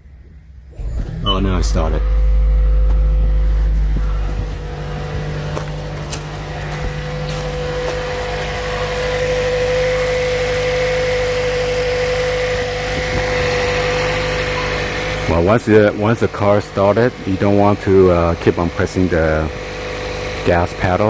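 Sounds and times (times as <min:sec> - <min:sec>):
steady whine: 0:00.0 - 0:16.6
car engine hum: 0:00.4 - 0:12.5.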